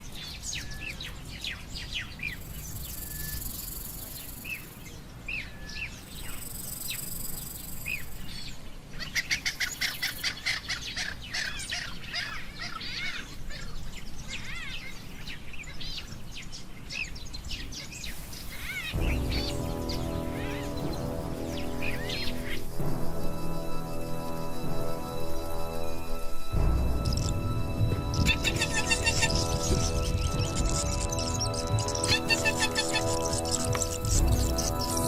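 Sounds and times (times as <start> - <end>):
high hiss: 18.0 - 35.0
small birds chirping: 26.4 - 35.0.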